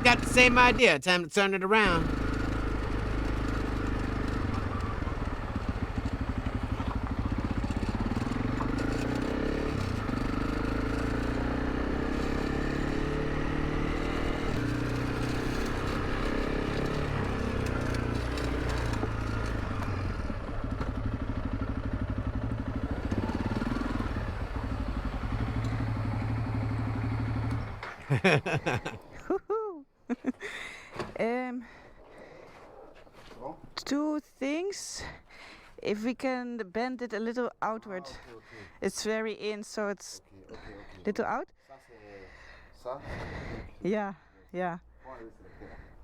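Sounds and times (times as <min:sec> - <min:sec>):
motorcycle engine revving: 0:00.0 - 0:00.8, 0:01.8 - 0:29.1.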